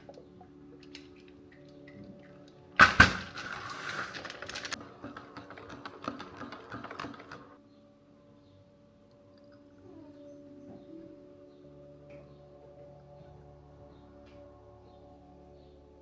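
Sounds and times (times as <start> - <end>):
small hard objects clinking: 0.0 - 4.8.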